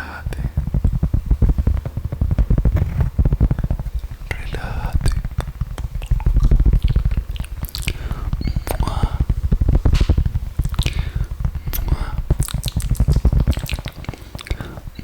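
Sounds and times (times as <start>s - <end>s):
low rumble: 0.0s - 15.0s
wet mouth clicks and smacks: 4.3s - 15.0s.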